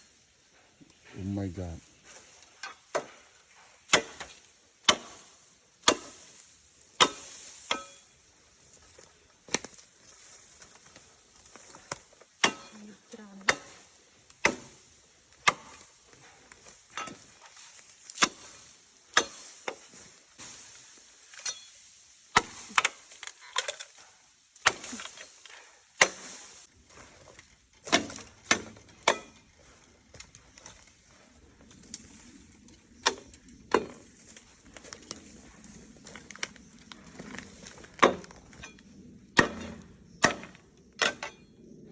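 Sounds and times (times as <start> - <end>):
blade chopping bamboo: 3.9 - 6.3, 7.0 - 7.9, 13.5 - 14.8, 15.4 - 15.9, 24.6 - 25.4, 26.0 - 26.5, 27.8 - 29.3.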